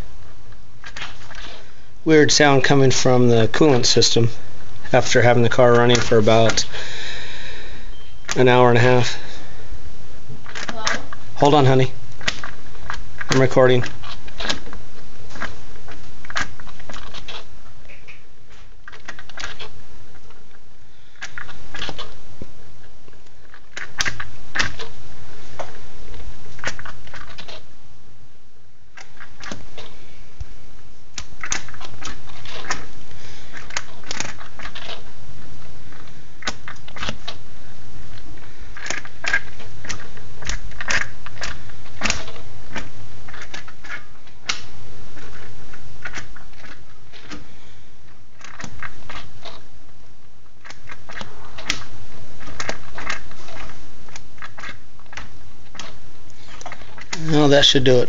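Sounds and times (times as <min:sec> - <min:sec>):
coolant clicking and crackling: 0:00.0 - 0:09.5, 0:10.4 - 0:27.7, 0:28.9 - 0:30.5, 0:31.1 - 0:58.0.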